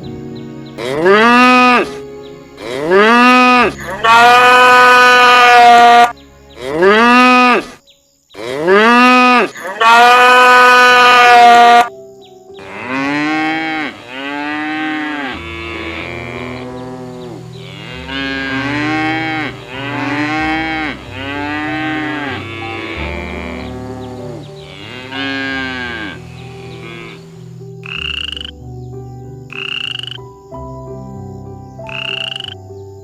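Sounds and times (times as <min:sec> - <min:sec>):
animal calls rising and falling: 0:02.6 - 0:07.8, 0:08.4 - 0:11.9, 0:12.6 - 0:28.5.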